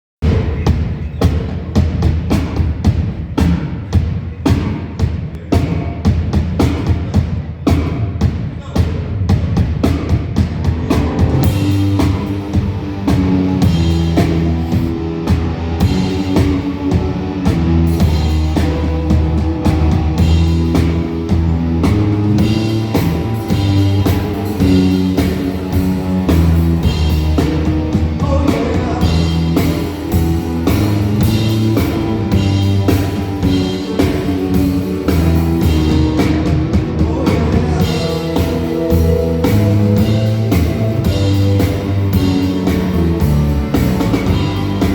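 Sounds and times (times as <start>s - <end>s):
drum beat: 0.2s - 44.9s
bass notes: 9.4s - 44.9s
electric guitar: 10.8s - 44.9s.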